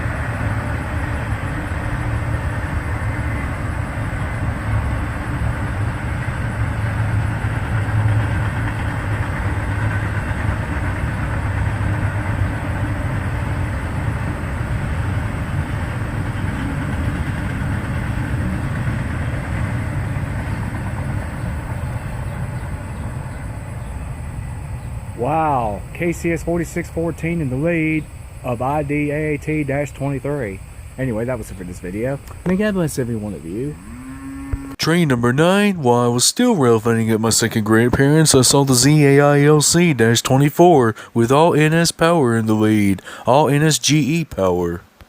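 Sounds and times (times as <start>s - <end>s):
freight train rumbling past: 0.0s - 45.0s.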